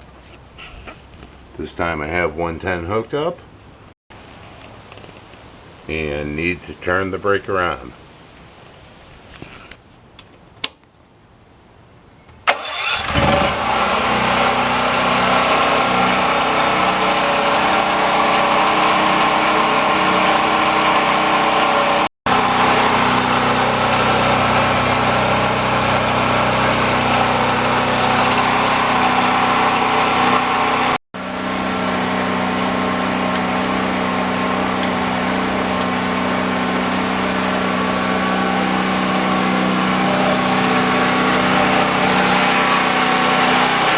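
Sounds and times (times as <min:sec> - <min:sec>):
generator engine running: 0:12.5 - 0:43.9.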